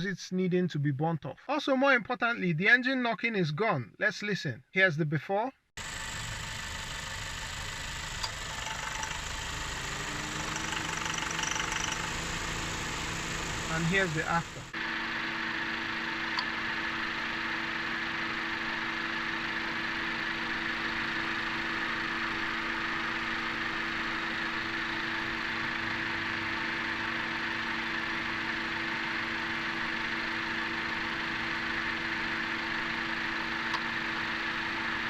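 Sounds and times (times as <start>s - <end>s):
car engine idling: 5.8s - 14.8s.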